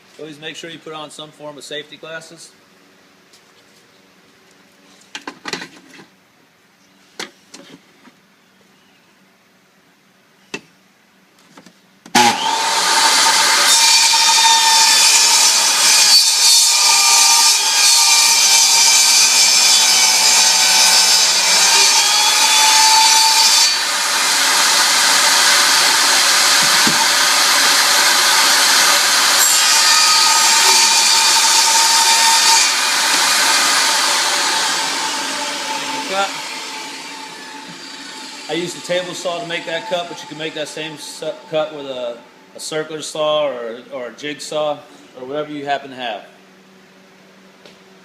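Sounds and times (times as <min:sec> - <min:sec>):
table saw cutting plank: 0:12.1 - 0:42.2.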